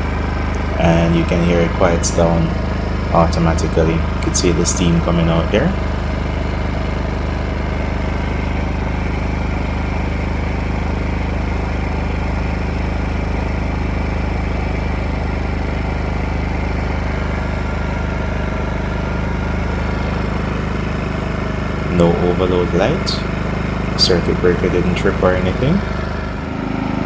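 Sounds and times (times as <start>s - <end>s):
generator engine running: 0.0s - 27.0s.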